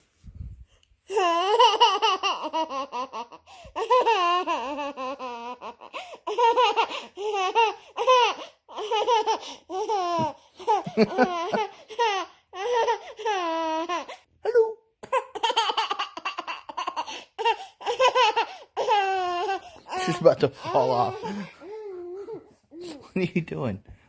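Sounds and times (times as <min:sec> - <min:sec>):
young child laughing: 0:09.9 - 0:12.2.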